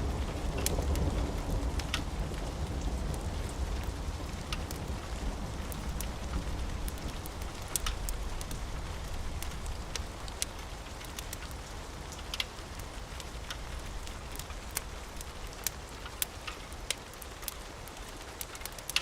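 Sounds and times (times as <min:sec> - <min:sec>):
steady rain: 0:00.0 - 0:19.0
wood fire crackling: 0:00.0 - 0:19.0.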